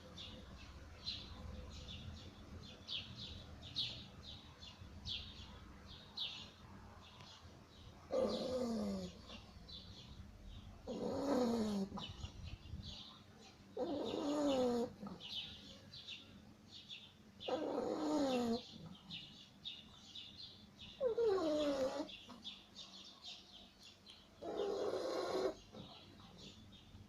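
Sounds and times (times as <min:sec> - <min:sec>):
dog snoring: 0:08.1 - 0:09.4, 0:10.8 - 0:12.3, 0:13.8 - 0:15.3, 0:17.5 - 0:18.9, 0:21.0 - 0:22.2, 0:24.4 - 0:25.9.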